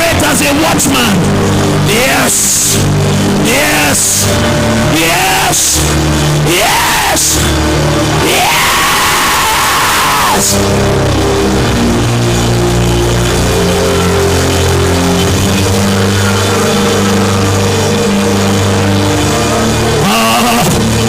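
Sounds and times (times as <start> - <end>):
keyboard sustained chords: 0.0 - 21.0.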